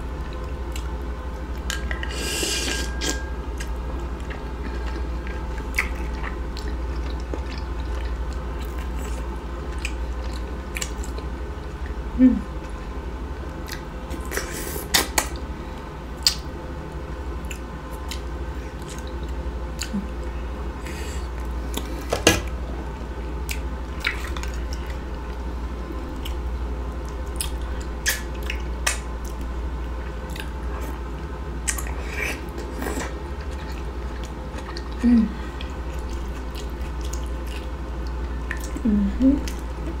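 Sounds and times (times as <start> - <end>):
steady low hum: 0.0 - 40.0
wet chewing and lip smacking: 3.0 - 12.0, 13.6 - 15.4, 16.2 - 16.5, 17.4 - 20.3, 23.4 - 25.4, 26.1 - 35.0, 35.6 - 40.0.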